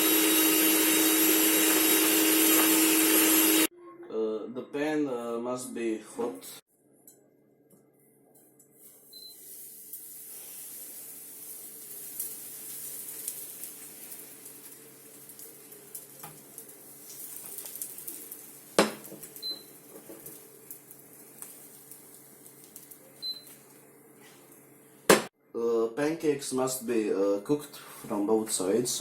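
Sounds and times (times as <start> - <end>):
batter sizzling in frying pan: 8.8 - 24.8
small crackles: 11.5 - 24.6.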